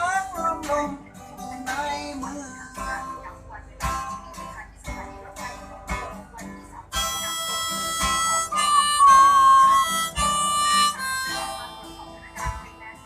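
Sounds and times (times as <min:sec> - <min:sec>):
acoustic guitar strumming: 0:00.0 - 0:13.0
harmonica melody: 0:06.4 - 0:13.0.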